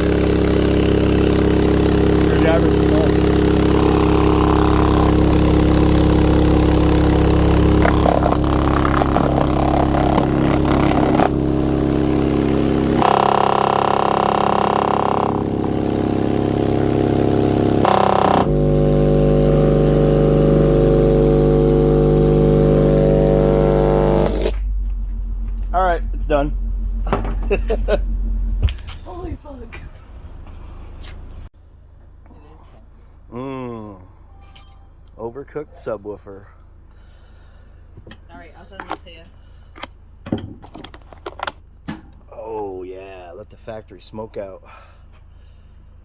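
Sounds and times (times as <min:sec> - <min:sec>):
distorted subwoofer bass tones: 0:00.0 - 0:31.5.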